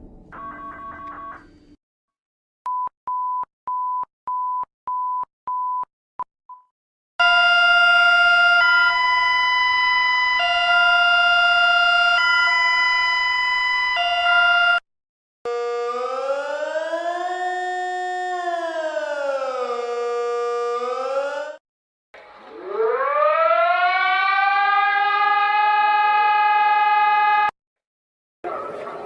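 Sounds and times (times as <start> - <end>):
two-tone alarm: 0.3 - 1.7, 7.2 - 14.8, 15.5 - 16.8, 19.6 - 21.6.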